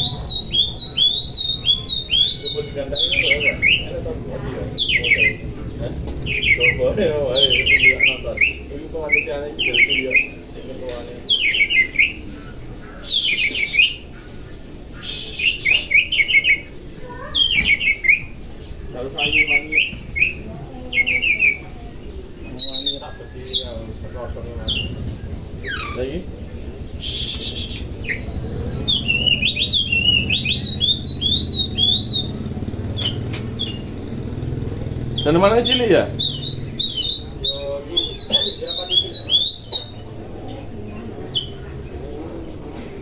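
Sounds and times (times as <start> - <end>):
bird singing sharp notes: 0.0 - 4.0, 22.4 - 42.7
steady low hum: 20.0 - 43.0
bird sharp ticks: 32.9 - 35.1.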